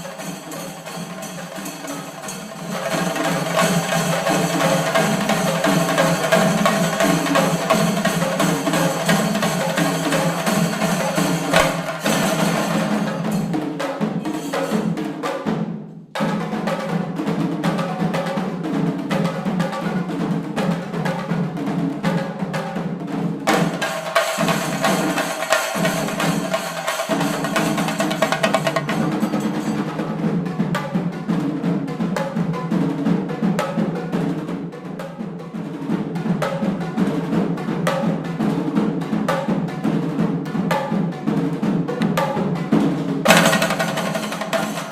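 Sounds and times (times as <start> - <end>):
cymbals ringing: 0.0 - 5.5, 8.5 - 13.6, 14.2 - 15.0, 23.8 - 30.0
drums beaten in fast rolls: 0.0 - 44.9.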